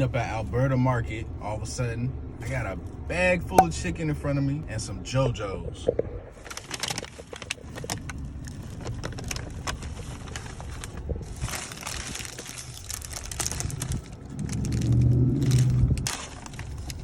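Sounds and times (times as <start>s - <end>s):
low steady rumble: 0.0s - 17.0s
paper bag crinkling: 6.4s - 17.0s.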